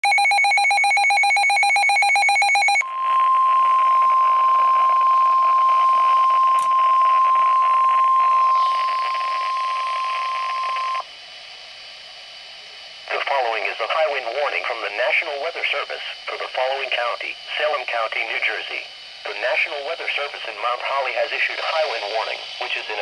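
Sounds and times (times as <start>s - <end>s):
warbling digital header tones: 0.0s - 11.0s
steady warning alarm tone: 0.0s - 11.1s
radio static: 2.6s - 11.0s, 13.0s - 23.0s.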